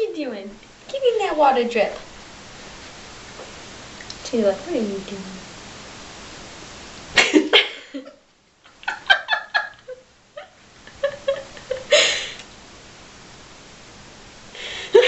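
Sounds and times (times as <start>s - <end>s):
person giggling: 7.2s - 12.4s, 14.6s - 15.0s.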